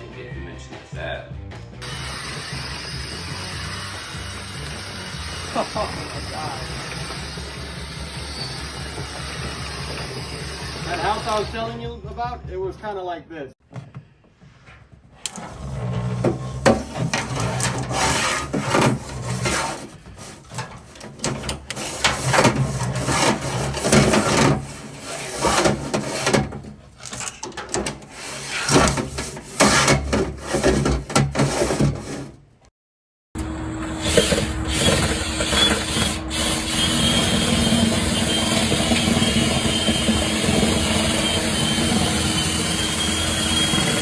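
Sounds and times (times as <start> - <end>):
machine hum: 15.2 - 32.4
tool scraping inside duct: 15.2 - 32.5
steady motor hum: 15.3 - 32.4.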